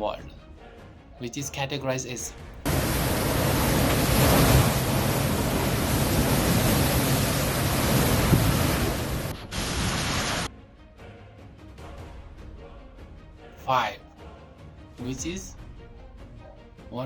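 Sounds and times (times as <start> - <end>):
faint background music: 0.0 - 2.7, 10.7 - 17.0
hurricane wind rushing: 2.7 - 10.5.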